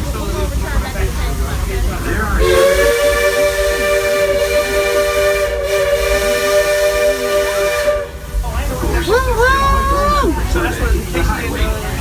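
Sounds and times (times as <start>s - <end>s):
train rumbling: 0.0s - 12.0s
steam locomotive whistle: 2.4s - 8.4s.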